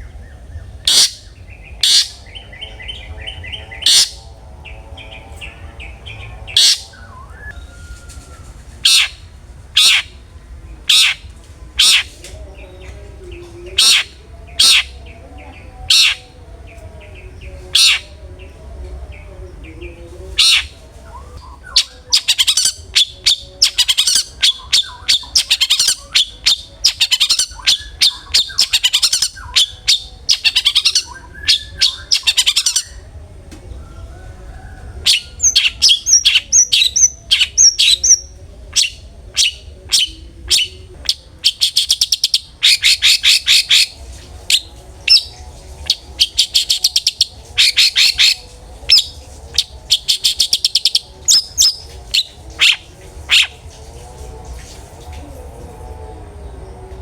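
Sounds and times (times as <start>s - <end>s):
bird singing harsh notes: 0.0s - 10.2s, 10.8s - 12.2s, 13.7s - 15.2s, 15.9s - 16.4s, 21.4s - 33.0s, 35.1s - 53.6s.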